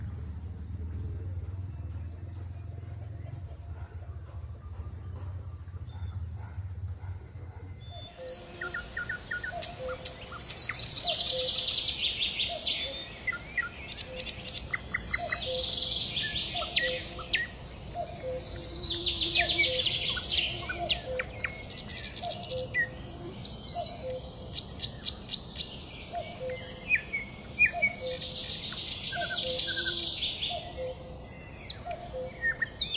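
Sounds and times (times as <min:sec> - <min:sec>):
low hum: 0:00.0 - 0:12.0
birds singing and chirping: 0:00.0 - 0:32.9.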